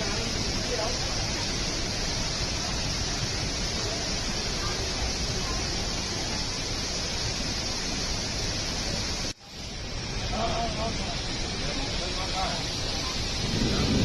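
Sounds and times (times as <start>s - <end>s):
heavy rain falling: 0.0s - 14.0s.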